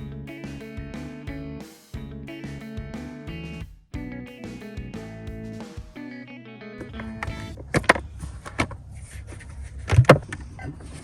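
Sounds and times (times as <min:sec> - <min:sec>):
guitar background music: 0:00.0 - 0:07.7.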